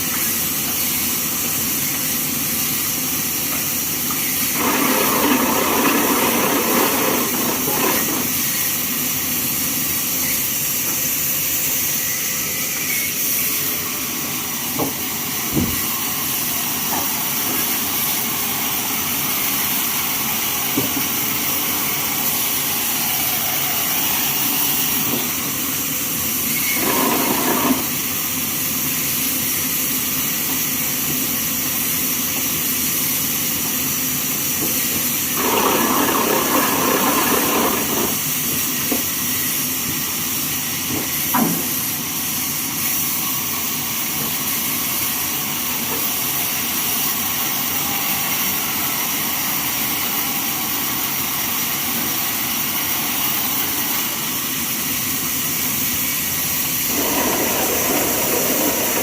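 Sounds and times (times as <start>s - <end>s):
bandsaw mill running: 0.0s - 59.0s.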